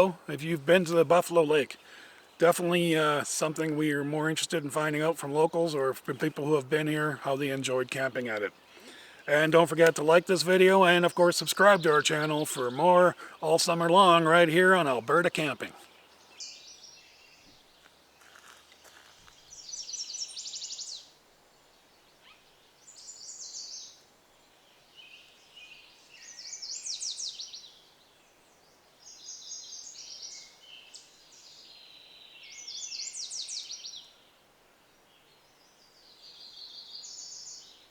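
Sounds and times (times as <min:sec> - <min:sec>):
songbird trilling: 0:00.0 - 0:17.2.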